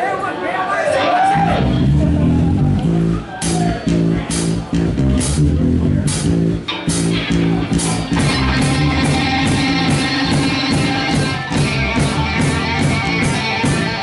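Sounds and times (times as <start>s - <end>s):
bass guitar: 1.0s - 14.0s
electric guitar riff: 1.3s - 14.0s
drums with cymbal hits: 2.9s - 14.0s.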